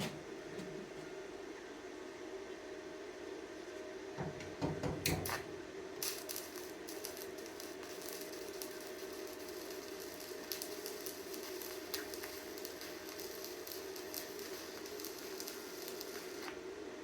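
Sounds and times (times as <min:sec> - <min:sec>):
welding arc crackling and sizzling: 0:05.0 - 0:16.7.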